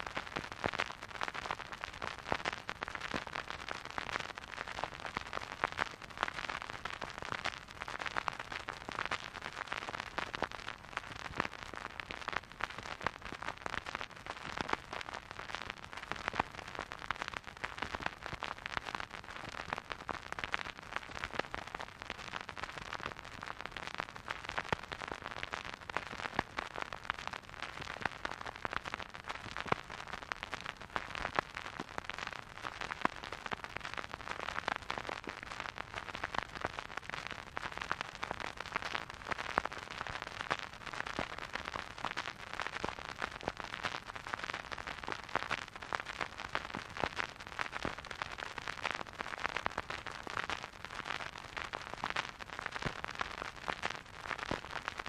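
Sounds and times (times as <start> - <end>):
vinyl record crackle and hiss: 0.0 - 55.0.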